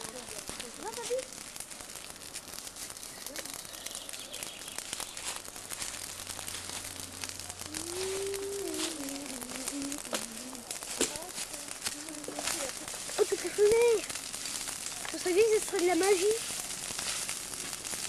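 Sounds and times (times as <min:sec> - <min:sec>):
campfire crackling: 0:00.0 - 0:18.0
person holding a drawn-out tone: 0:07.1 - 0:10.7.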